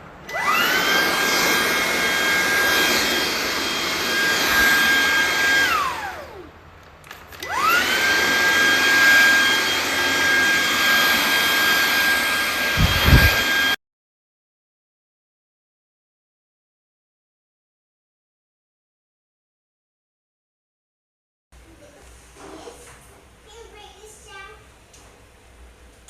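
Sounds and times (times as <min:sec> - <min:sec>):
stick vacuum motor whine: 0:00.3 - 0:06.5, 0:07.4 - 0:13.8
low thumps: 0:12.8 - 0:13.4.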